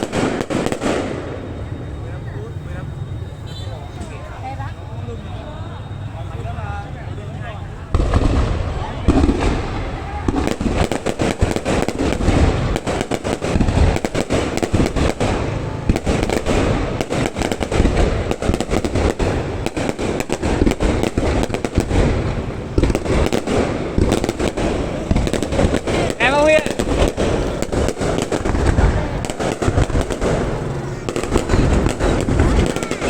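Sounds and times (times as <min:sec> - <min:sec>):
fireworks bangs and crackling: 0:00.0 - 0:33.0
low rumble of distant bursts: 0:00.0 - 0:33.0.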